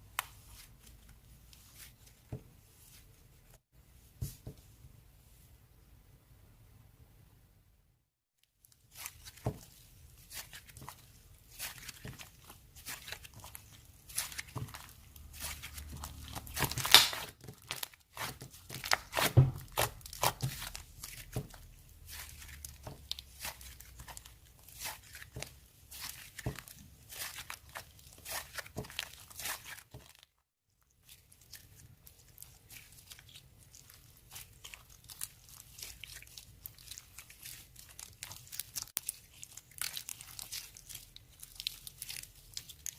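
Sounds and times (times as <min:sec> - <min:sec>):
slime squished by hand: 0:08.8 - 0:30.2, 0:30.9 - 0:42.9.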